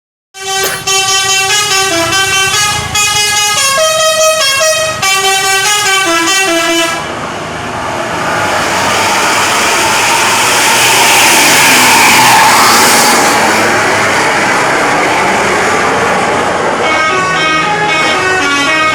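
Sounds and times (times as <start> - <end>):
multi-tone bus horn melody: 0.4 - 7.2, 16.7 - 18.9
bus engine: 0.4 - 18.9.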